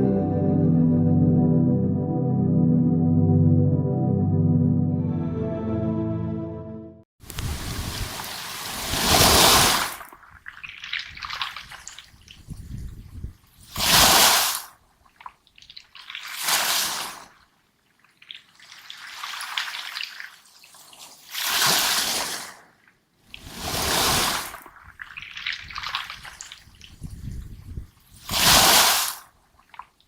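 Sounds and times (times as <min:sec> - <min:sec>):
waves breaking on pebbles: 0:07.4 - 0:12.1, 0:16.2 - 0:17.4, 0:21.0 - 0:26.7, 0:28.1 - 0:29.3.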